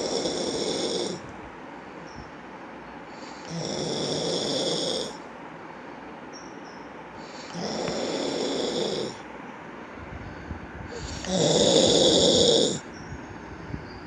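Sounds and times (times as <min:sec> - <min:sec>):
rasping snores: 0:00.0 - 0:01.3, 0:03.2 - 0:05.2, 0:07.3 - 0:09.2, 0:10.9 - 0:12.8.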